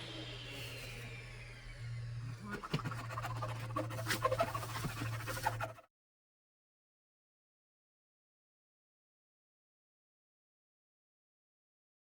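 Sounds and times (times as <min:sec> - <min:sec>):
steady low hum: 0:00.0 - 0:05.8
scratching noises: 0:02.4 - 0:05.8.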